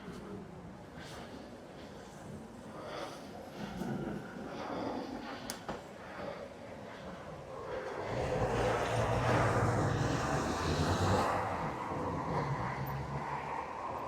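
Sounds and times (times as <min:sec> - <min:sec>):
vehicle passing by: 0:07.9 - 0:14.0.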